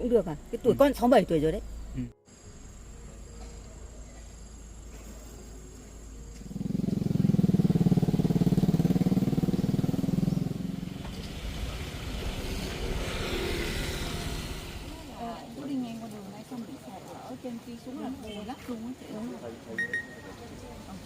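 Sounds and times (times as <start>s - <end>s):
motorbike engine running: 5.8s - 15.3s.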